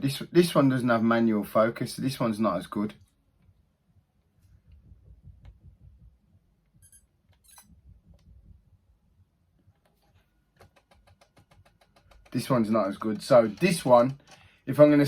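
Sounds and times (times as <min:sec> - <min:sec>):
soft low bumps of handling: 0:04.3 - 0:06.6
short high electronic beep: 0:06.8 - 0:07.7.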